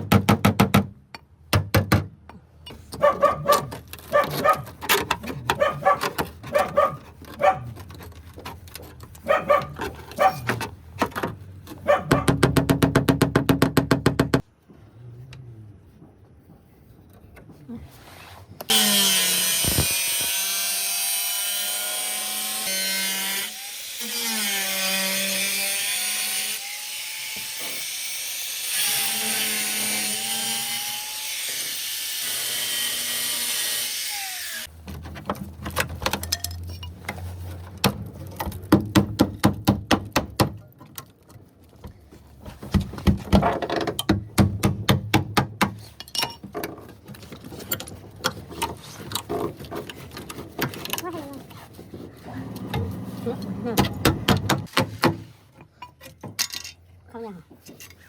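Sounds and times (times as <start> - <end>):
power tool grinding metal: 18.7 - 34.7.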